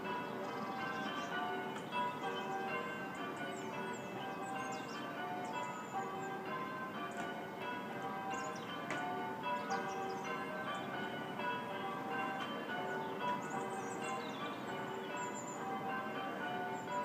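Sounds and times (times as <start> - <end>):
church bells ringing: 0.0 - 17.0
songbirds chirping: 0.0 - 17.0.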